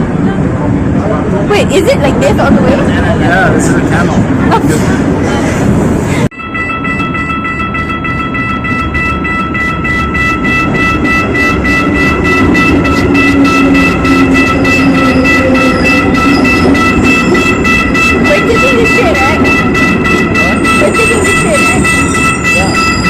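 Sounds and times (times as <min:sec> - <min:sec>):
electric train whine: 0:05.0 - 0:23.0.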